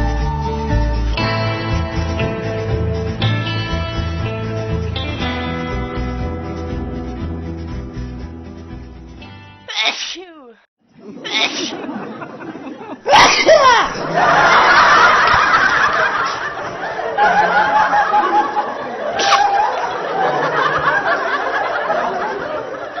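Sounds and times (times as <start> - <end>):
loud sneeze: 9.7 - 10.4, 11.2 - 11.9, 13.1 - 14.0, 19.2 - 19.7
person laughing: 9.7 - 14.1, 17.2 - 20.9.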